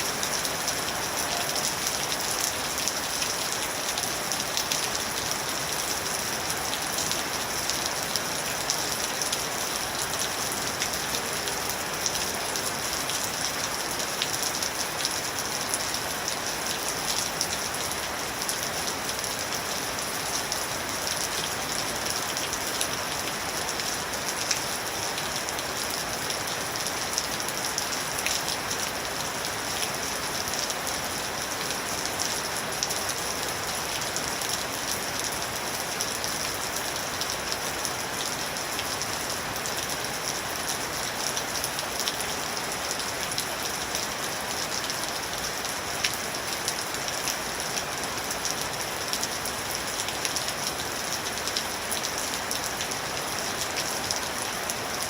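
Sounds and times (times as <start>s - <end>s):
rain pattering: 0.0s - 55.0s.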